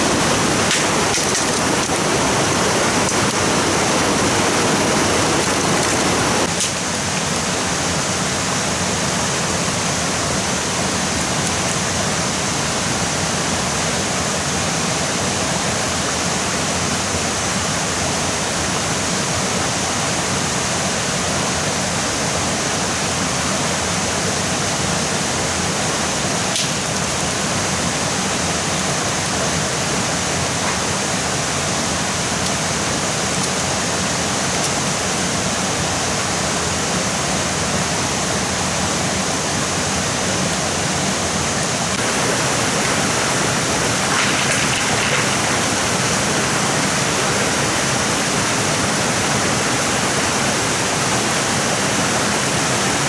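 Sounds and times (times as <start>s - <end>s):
stream water rushing: 0.0s - 20.1s, 23.9s - 53.0s.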